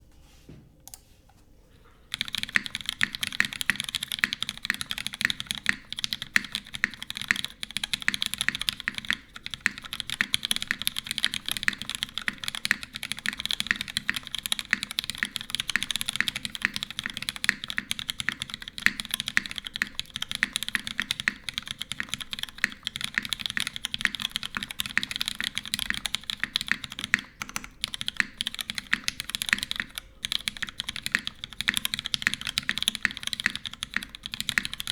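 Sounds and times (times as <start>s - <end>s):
mechanical keyboard typing: 2.1s - 34.9s.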